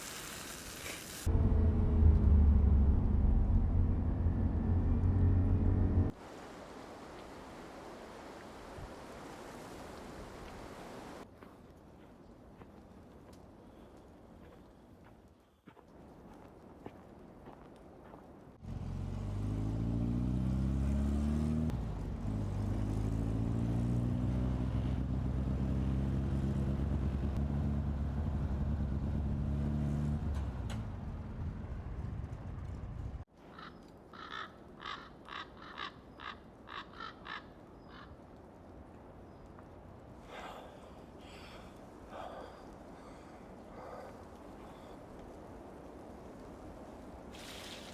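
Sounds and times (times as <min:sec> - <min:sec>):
vehicle engine running: 0:01.3 - 0:06.2.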